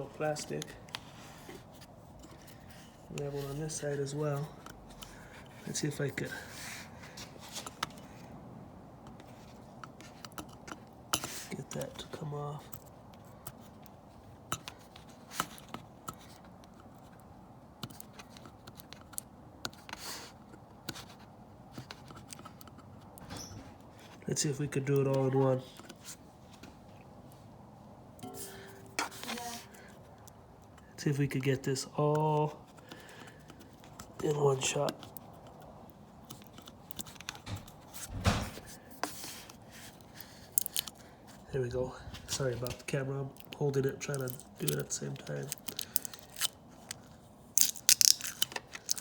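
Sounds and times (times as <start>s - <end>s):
crinkles and small clicks: 9.0s - 23.2s, 29.3s - 38.1s, 39.0s - 41.5s, 42.2s - 49.0s
fingernail scraping plastic film: 39.0s - 41.0s, 43.4s - 49.0s
plastic film rustling: 42.4s - 49.0s.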